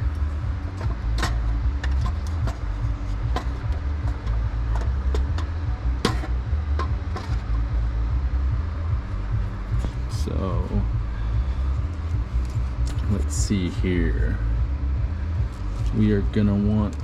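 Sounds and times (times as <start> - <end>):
cooling fans droning: 0.0 - 17.0
equipment clicks and knocks: 0.7 - 7.4.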